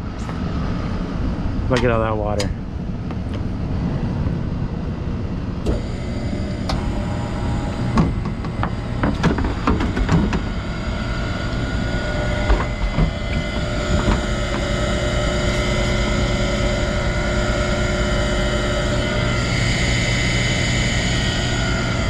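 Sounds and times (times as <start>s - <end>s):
air conditioner drone: 0.0s - 22.0s
knocks and clicks: 7.8s - 10.5s.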